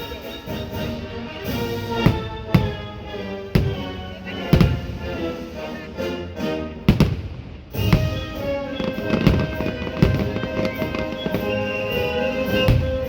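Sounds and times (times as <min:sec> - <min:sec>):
fireworks bangs: 0:00.0 - 0:05.6, 0:06.9 - 0:13.0
orchestral music over speakers: 0:00.0 - 0:13.0.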